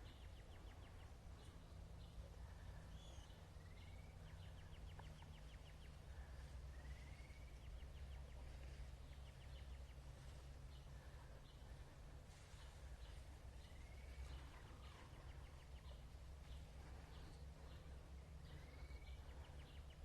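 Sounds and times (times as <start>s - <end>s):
low steady rumble: 0.0s - 20.0s
small birds trilling: 0.0s - 20.0s.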